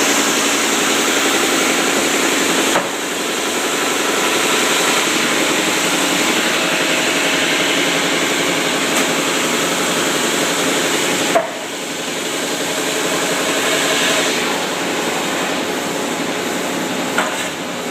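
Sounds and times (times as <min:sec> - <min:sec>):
power sander grinding wood: 0:00.0 - 0:11.4.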